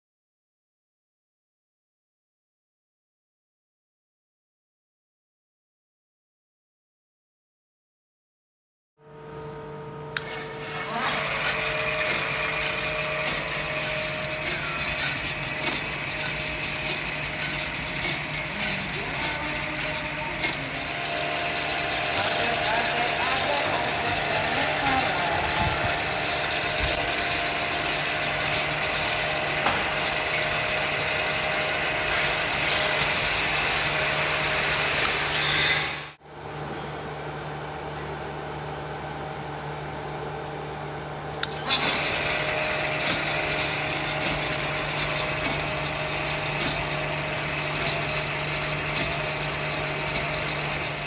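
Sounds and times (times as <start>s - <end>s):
machine motor humming: 9.1s - 36.2s, 37.8s - 51.0s
machine clicking and rattling: 10.2s - 36.2s, 41.4s - 51.0s.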